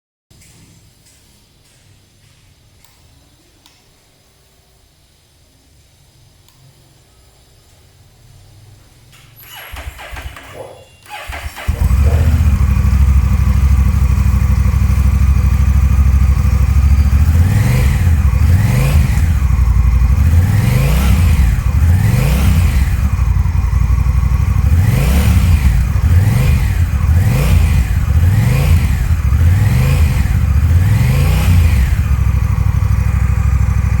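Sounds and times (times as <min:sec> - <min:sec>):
motorcycle engine starting: 0:09.4 - 0:34.0
motorcycle engine idling and revving: 0:09.6 - 0:34.0.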